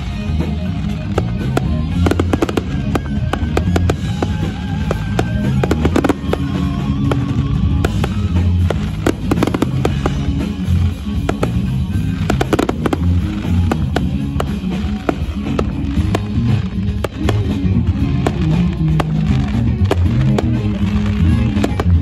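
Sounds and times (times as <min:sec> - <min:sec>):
fireworks bangs and crackles: 0:00.0 - 0:22.0
loud music with heavy bass: 0:00.0 - 0:22.0.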